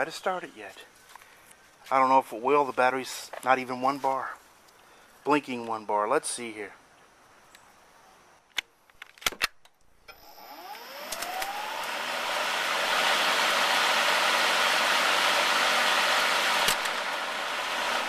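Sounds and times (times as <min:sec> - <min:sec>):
lawn mower motor whirring: 0:10.1 - 0:18.0
clicks: 0:10.7 - 0:11.6
sharp click: 0:10.7 - 0:11.6.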